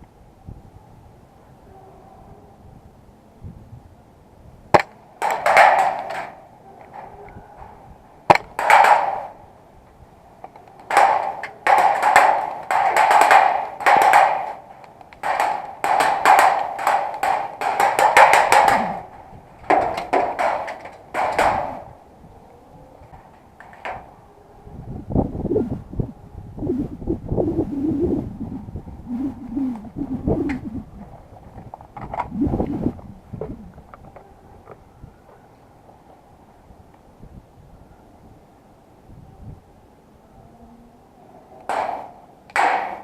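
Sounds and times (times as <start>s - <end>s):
airsoft rifle shots: 4.8s - 6.4s, 8.3s - 9.4s, 10.8s - 21.9s, 41.7s - 43.0s.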